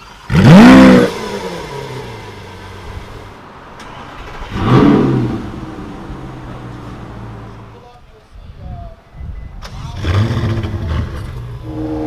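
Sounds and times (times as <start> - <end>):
car engine starting and revving: 0.0 - 7.7, 9.6 - 12.0
car engine idling: 0.0 - 8.0.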